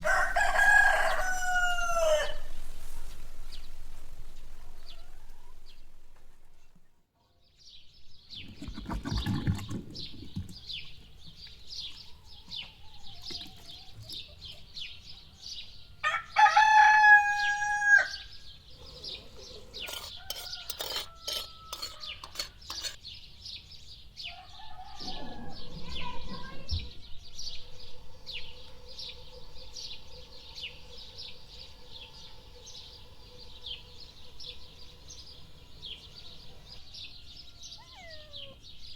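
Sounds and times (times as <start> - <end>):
rooster crowing: 0.0 - 2.7, 4.6 - 5.8, 16.0 - 18.4, 19.8 - 22.2, 24.3 - 25.9.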